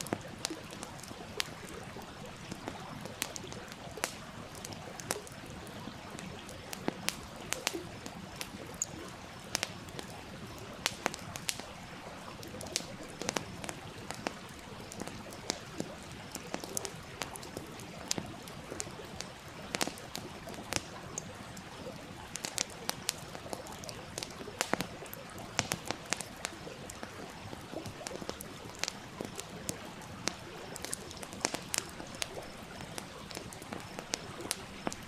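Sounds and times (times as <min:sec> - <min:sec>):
campfire crackling and popping: 0:00.0 - 0:35.0
stream flowing: 0:00.0 - 0:35.0.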